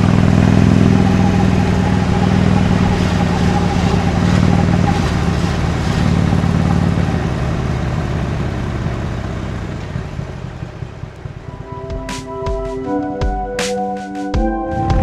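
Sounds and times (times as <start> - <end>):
motorcycle engine running: 0.0 - 12.2.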